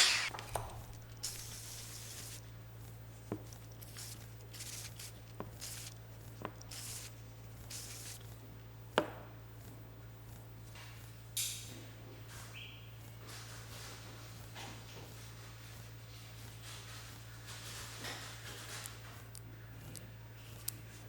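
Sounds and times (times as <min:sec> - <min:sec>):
steady low hum: 0:00.0 - 0:21.0
small parts clicking and tapping: 0:00.3 - 0:01.5.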